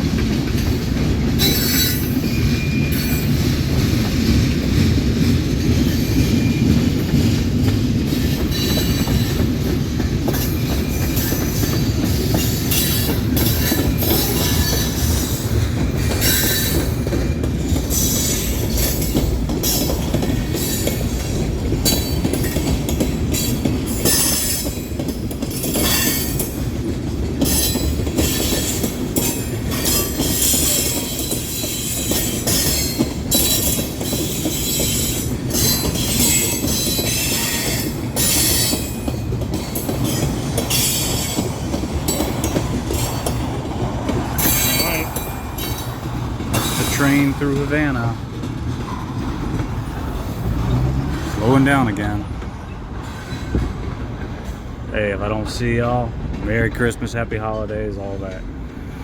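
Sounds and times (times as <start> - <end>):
train cars clattering: 0.0 - 59.0
train wheels rumbling on rail: 0.0 - 59.0
wheel squeals: 1.4 - 3.4, 5.9 - 7.3.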